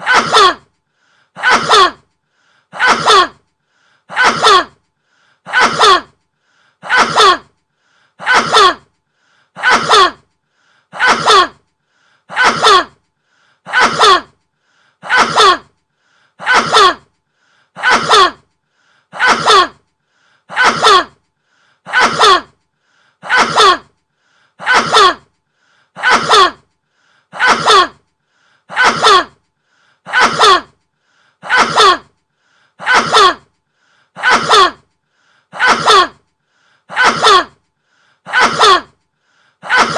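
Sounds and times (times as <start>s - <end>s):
man sneezing: 0.0s - 0.6s, 1.4s - 2.0s, 2.8s - 3.4s, 4.1s - 4.7s, 5.5s - 6.1s, 6.8s - 7.5s, 8.2s - 8.8s, 9.6s - 10.2s, 11.0s - 11.6s, 12.3s - 12.9s, 13.7s - 14.3s, 15.0s - 15.7s, 16.4s - 17.0s, 17.8s - 18.4s, 19.2s - 19.8s, 20.5s - 21.1s, 21.9s - 22.5s, 23.2s - 23.9s, 24.6s - 25.2s, 26.0s - 26.6s, 27.4s - 28.0s, 28.7s - 29.3s, 30.1s - 30.7s, 31.4s - 32.1s, 32.8s - 33.4s, 34.2s - 34.9s, 35.6s - 36.2s, 36.9s - 37.5s, 38.3s - 38.9s, 39.6s - 39.9s.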